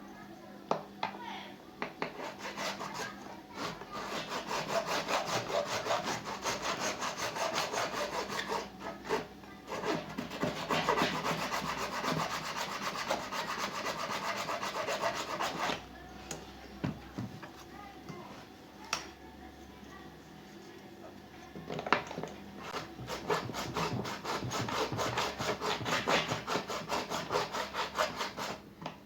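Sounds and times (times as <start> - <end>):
hand saw sawing: 2.0 - 15.8, 22.6 - 28.6.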